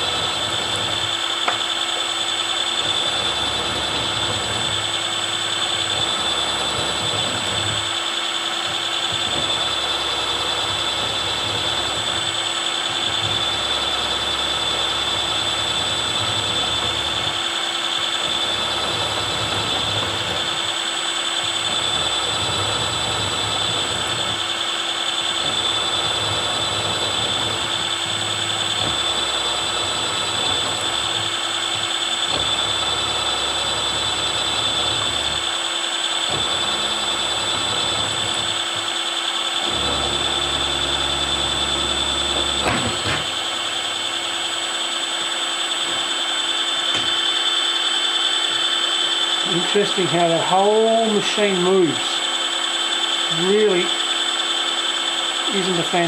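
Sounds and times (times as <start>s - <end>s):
low rumble of cutter plunging: 0.0s - 1.6s, 2.2s - 20.8s, 21.4s - 35.6s, 36.3s - 39.0s, 39.6s - 44.6s
milling machine spindle whine: 0.0s - 56.0s
rough cutting noise: 2.6s - 35.7s.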